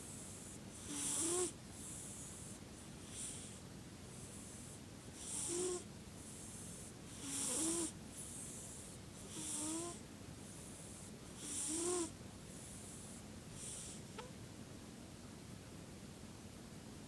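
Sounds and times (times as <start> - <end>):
snoring with whistling squeak: 0.8 - 1.6, 5.2 - 5.8, 7.2 - 7.9, 9.3 - 10.0, 11.4 - 12.1.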